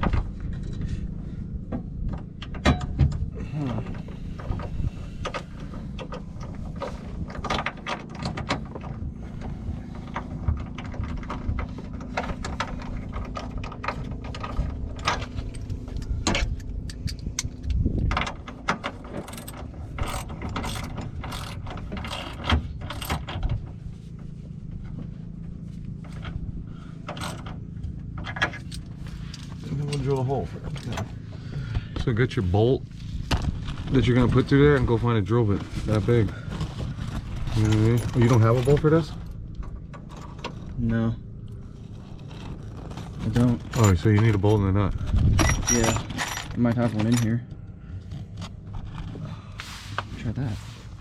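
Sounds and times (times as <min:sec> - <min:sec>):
steady low hum: 0:00.0 - 0:51.0
ratchet wrench clicking: 0:19.3 - 0:22.3.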